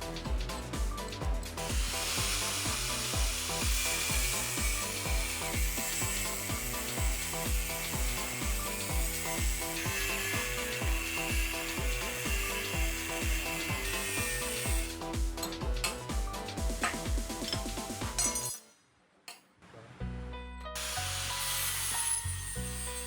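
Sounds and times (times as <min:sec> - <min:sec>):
background music with beat: 0:00.0 - 0:18.6
angle grinder on metal: 0:01.6 - 0:15.2, 0:20.8 - 0:23.0.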